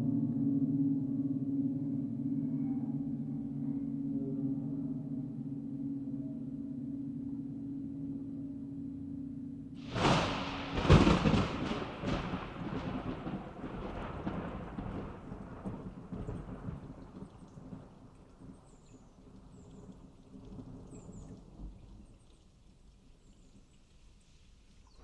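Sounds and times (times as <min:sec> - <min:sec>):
thunderclap crash: 0:09.8 - 0:18.6
thunder rolling rumble: 0:09.8 - 0:22.5.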